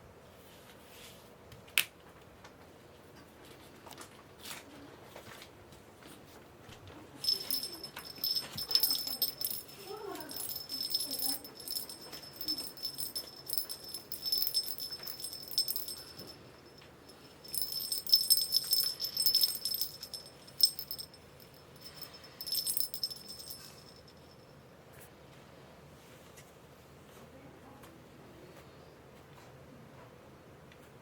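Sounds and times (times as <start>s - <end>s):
small metal bell jingling: 7.2s - 24.5s.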